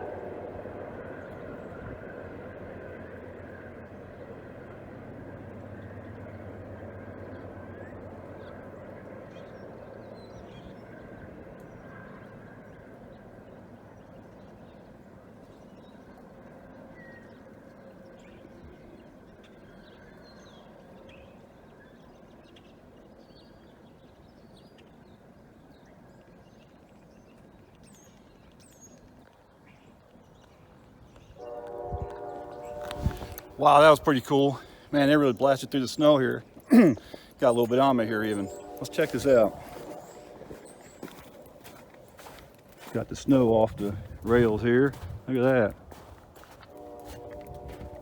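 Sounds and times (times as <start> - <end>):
diesel freight train rumble: 0.0 - 20.1, 31.3 - 48.0.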